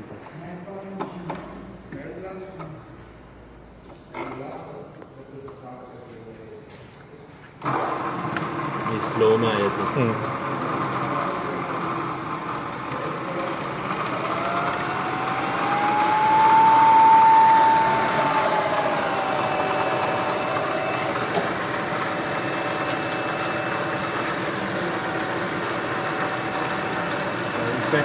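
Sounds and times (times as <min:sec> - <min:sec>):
milling machine motor whine: 0:07.6 - 0:28.0.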